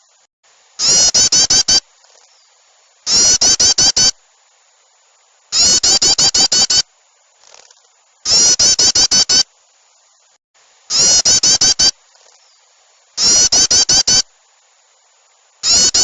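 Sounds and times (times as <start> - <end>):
harsh chattering bird call: 0.8 - 2.2, 3.1 - 4.1, 5.5 - 6.8, 7.5 - 9.4, 10.9 - 12.5, 13.2 - 14.3, 15.6 - 16.0.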